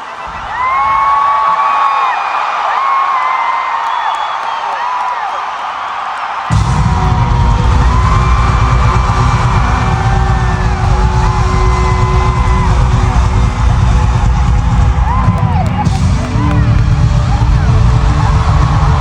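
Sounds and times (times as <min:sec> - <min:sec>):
crowd yelling and whooping: 0:00.0 - 0:19.0.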